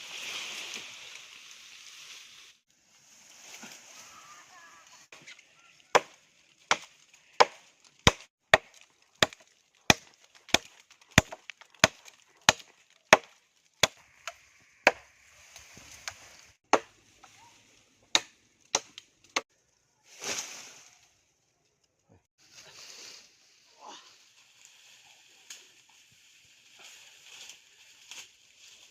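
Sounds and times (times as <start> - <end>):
blade chopping into wood: 6.0 - 15.0.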